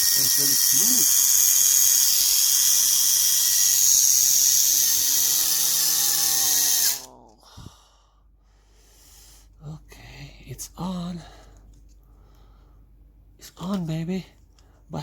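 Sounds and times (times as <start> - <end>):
small electric motor whine: 0.0 - 7.1.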